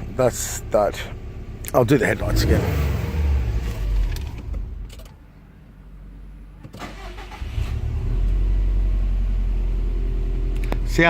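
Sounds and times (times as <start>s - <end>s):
engine cranking and idling: 0.0s - 5.5s, 6.6s - 11.0s
car engine running: 0.0s - 6.6s
ignition clicks: 1.6s - 5.4s, 6.6s - 8.4s.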